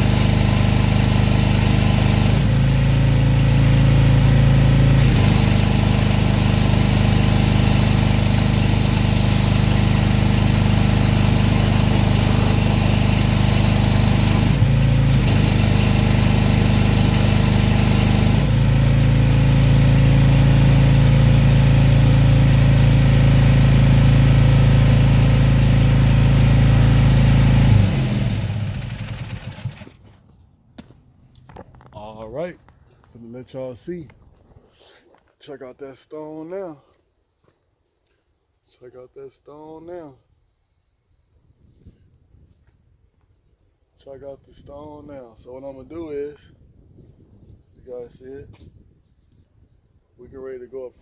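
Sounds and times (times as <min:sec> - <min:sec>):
pressure washer engine running: 0:00.0 - 0:30.0.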